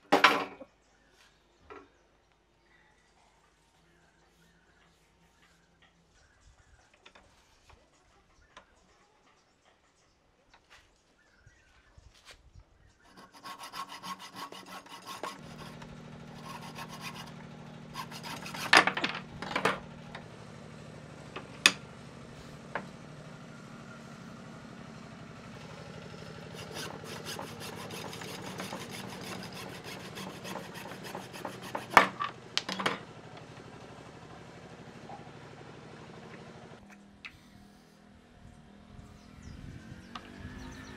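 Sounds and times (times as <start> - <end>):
sharp scrapes: 13.1 - 19.0, 26.5 - 32.2
wood being rasped: 13.1 - 19.2, 26.3 - 32.3
machine motor humming: 14.0 - 23.0, 25.5 - 38.0.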